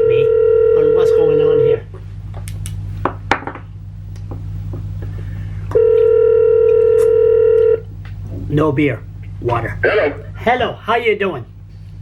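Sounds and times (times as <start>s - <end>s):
telephone ringback tone: 0.0s - 1.8s, 5.8s - 7.8s
low constant hum: 0.0s - 12.0s.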